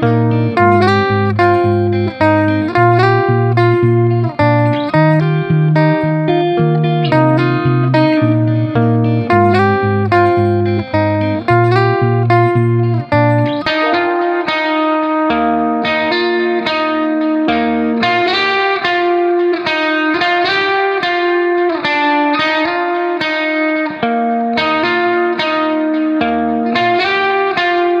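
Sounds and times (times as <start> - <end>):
bass line: 0.0 - 13.8
plucked melody: 0.0 - 28.0.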